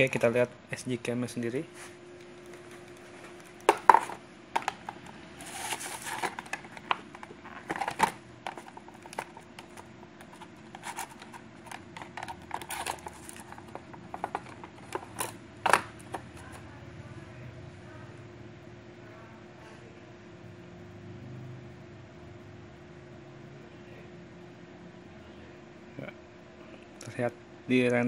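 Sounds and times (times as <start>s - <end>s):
plastic rustle: 2.6s - 15.4s
camera handling clicks and knocks: 3.6s - 5.0s, 11.1s - 16.2s.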